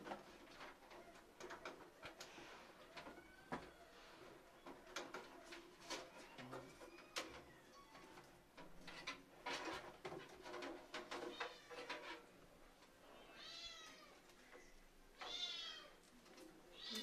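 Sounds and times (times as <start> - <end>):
cat meowing: 13.2 - 14.2, 16.7 - 17.0.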